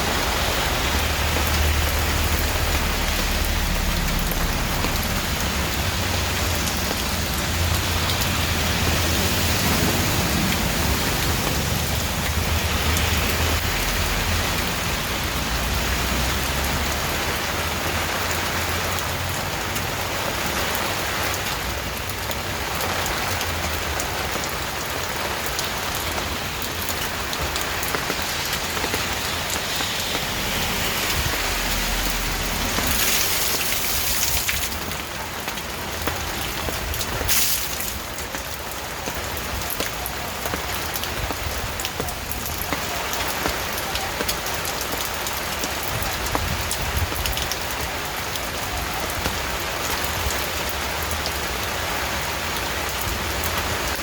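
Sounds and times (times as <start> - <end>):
rain pattering on surfaces: 0.0 - 54.0
water splash: 28.3 - 35.0, 37.0 - 38.2.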